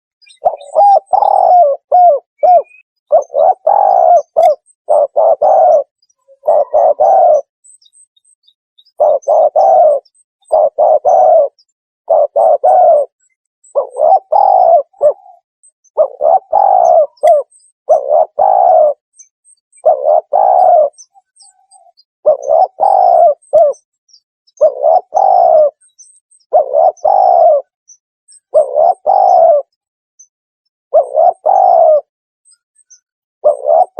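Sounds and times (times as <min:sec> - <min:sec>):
dove cooing: 0:00.3 - 0:07.5, 0:09.0 - 0:19.0, 0:19.8 - 0:23.8, 0:24.6 - 0:25.8, 0:26.5 - 0:27.8, 0:28.5 - 0:29.8, 0:30.9 - 0:32.1, 0:33.4 - 0:33.9.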